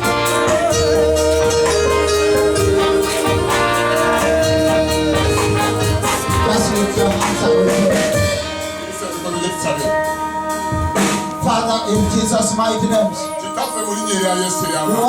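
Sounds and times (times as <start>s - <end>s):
worship music with singing: 0.0s - 15.0s.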